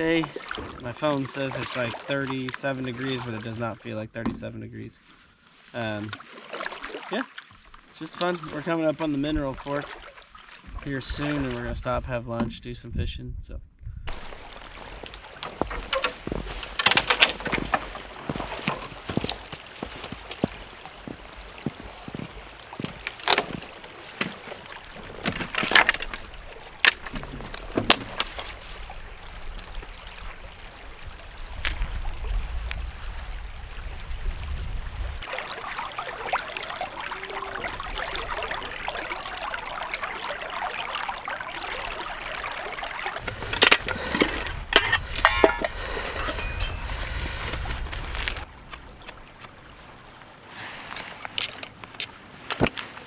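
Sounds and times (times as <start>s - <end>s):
wind rumble on microphone: 10.7s - 16.6s, 28.6s - 35.3s, 43.2s - 50.2s
paddle strokes knocking and splashing: 14.1s - 30.4s, 35.2s - 49.5s
rushing river water: 14.1s - 53.0s.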